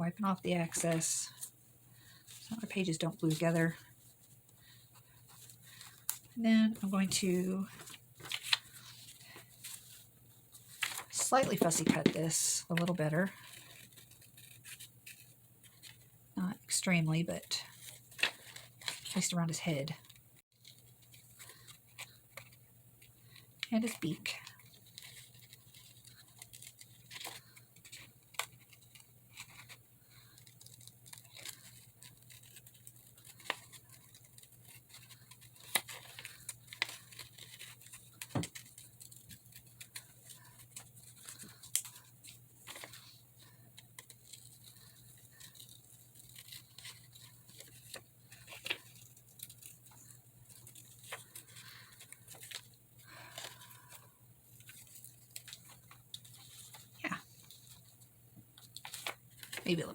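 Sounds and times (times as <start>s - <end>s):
scissors snipping paper: 23.6s - 52.7s.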